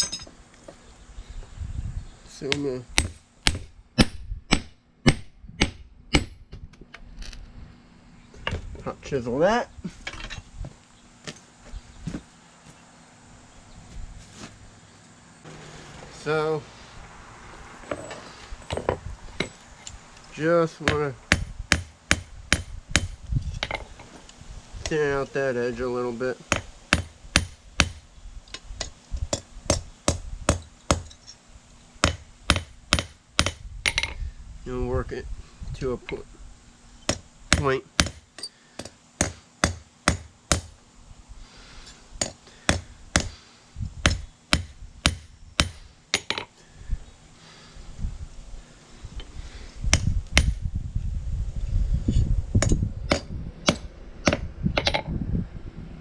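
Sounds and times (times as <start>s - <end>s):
low rumble: 47.8s - 56.0s.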